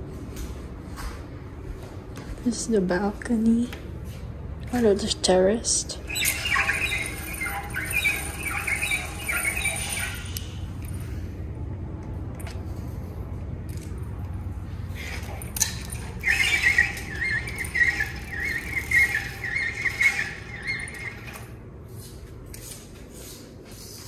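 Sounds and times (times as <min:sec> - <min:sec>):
steady low hum: 0:00.0 - 0:24.0
small bird singing: 0:06.0 - 0:10.6, 0:16.1 - 0:21.3.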